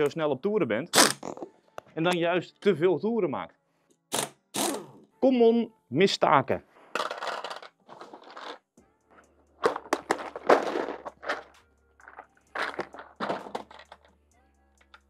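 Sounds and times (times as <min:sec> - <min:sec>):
rustling and clattering handling: 0:06.9 - 0:08.7, 0:09.6 - 0:14.1.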